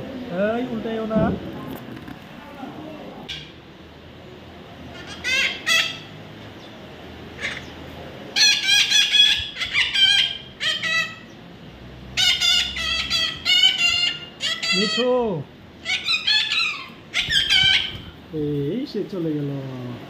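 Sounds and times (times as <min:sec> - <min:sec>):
parrot squawking and chattering: 0:03.2 - 0:03.6, 0:04.8 - 0:06.2, 0:07.3 - 0:11.4, 0:12.1 - 0:18.3.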